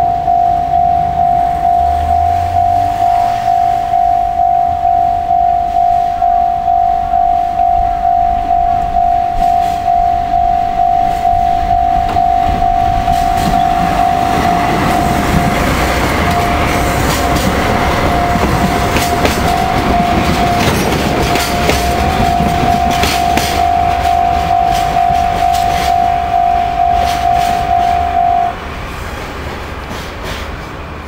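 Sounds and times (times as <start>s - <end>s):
level crossing bell ringing: 0.0s - 28.5s
train wheels clacking: 11.1s - 28.3s, 28.9s - 31.0s.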